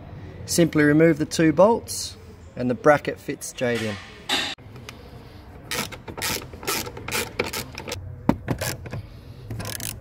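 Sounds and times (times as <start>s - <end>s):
ratchet wrench clicking: 9.5s - 10.0s.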